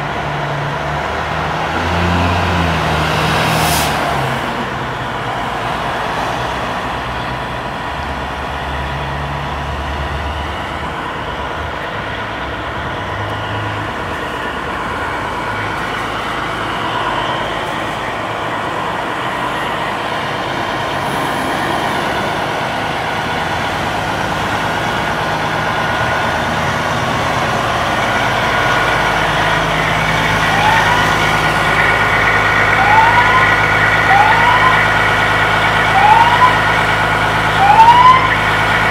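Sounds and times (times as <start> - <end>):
diesel engines running: 0.0 - 38.9
rising siren whoops: 27.8 - 38.9.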